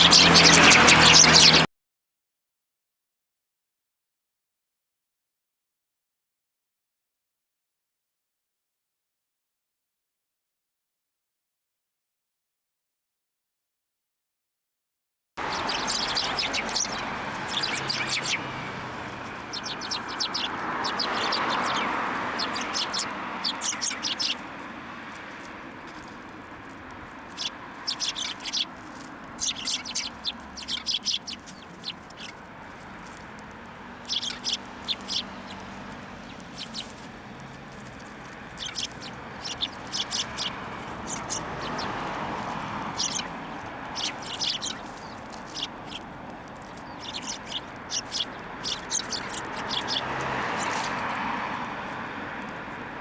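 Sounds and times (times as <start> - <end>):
small birds chirping: 0.0 - 1.7, 15.4 - 53.0.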